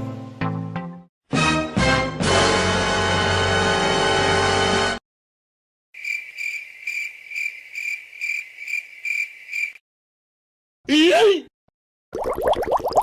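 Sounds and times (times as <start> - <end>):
music clip: 0.0 - 5.0
cricket chirping: 6.0 - 9.8.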